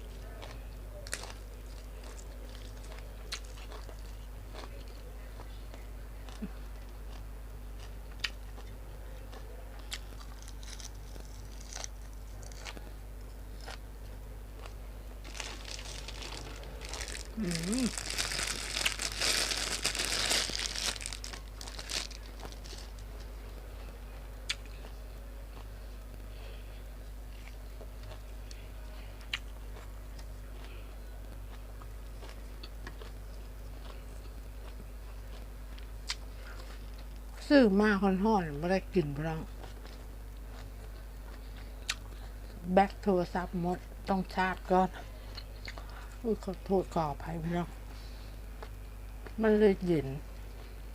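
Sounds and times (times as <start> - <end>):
low electrical hum: 0.0 - 50.9
person chewing food: 0.2 - 23.2, 29.2 - 37.3, 39.6 - 42.6, 45.3 - 46.2
person chewing with mouth clicks: 24.5 - 24.9, 41.3 - 42.2, 45.3 - 46.0.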